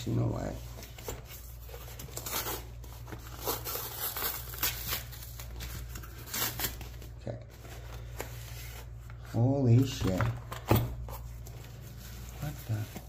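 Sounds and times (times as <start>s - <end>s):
packing crinkling and tearing: 1.6s - 7.3s.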